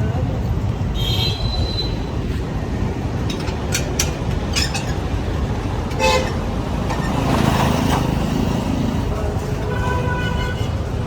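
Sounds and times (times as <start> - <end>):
motorcycle engine rumble: 1.7 - 9.7
vehicle horn toot: 6.0 - 6.4.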